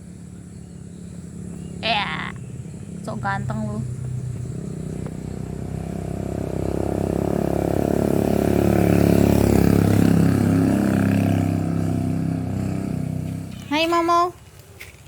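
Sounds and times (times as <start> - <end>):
vehicle engine approaching: 0.0 - 14.4.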